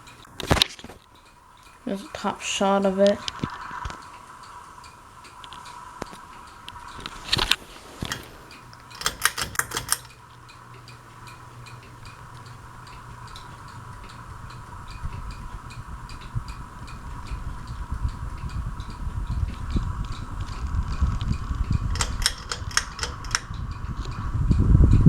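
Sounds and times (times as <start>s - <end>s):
ceiling fan motor hum: 0.0s - 25.0s
fan rhythmic ticking: 0.0s - 25.0s
sharp clicks: 5.4s - 17.0s, 18.8s - 24.2s.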